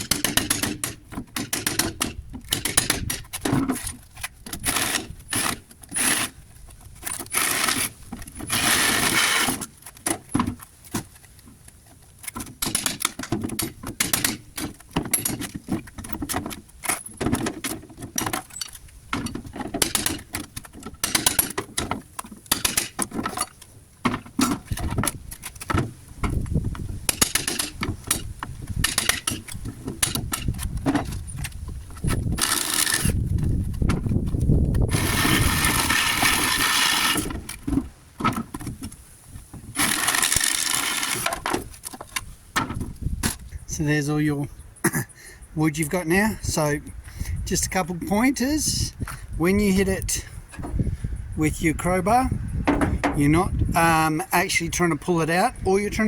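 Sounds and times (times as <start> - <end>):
hammer knocking on wooden pallet: 52.6 - 53.2.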